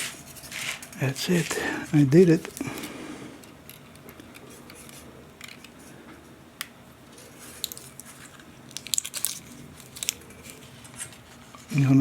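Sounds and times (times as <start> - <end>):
light rustling of wire: 7.1 - 11.9.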